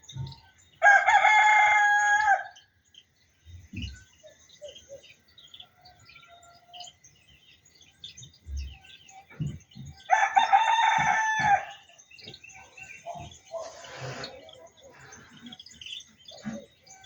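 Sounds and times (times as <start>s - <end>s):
small birds chirping: 0.0s - 17.0s
rooster crowing: 0.8s - 2.6s, 10.0s - 11.9s.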